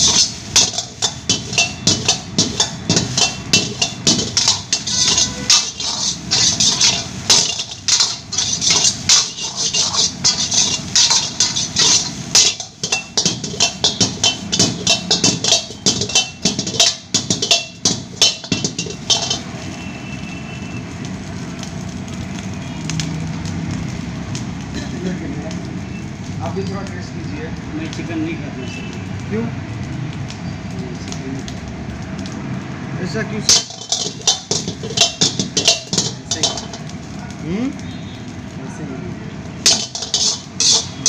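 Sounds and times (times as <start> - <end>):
metal spatula clanging on wok: 0.0 - 19.7, 33.4 - 37.0, 39.6 - 41.0
steady rushing noise: 0.0 - 19.8.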